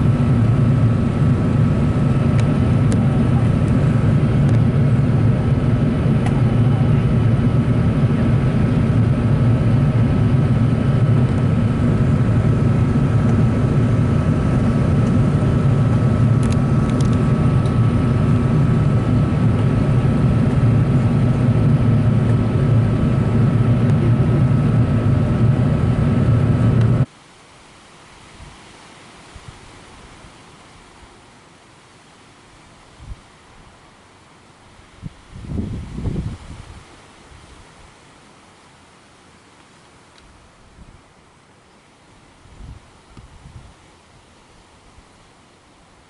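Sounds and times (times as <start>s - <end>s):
engine and airflow rumble: 0.0s - 27.2s, 32.9s - 38.1s
thin steady whine: 0.0s - 27.4s.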